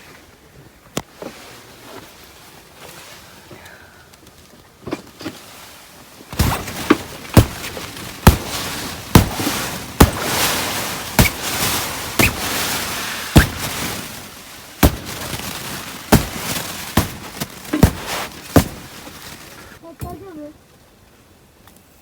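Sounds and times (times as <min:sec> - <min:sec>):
footsteps crunching in snow: 0:05.2 - 0:19.8.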